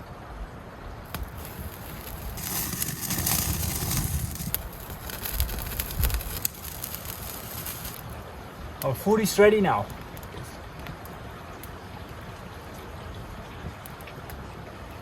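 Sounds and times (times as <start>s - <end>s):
fire hissing: 1.1s - 8.3s
wood fire crackling and popping: 1.1s - 11.8s.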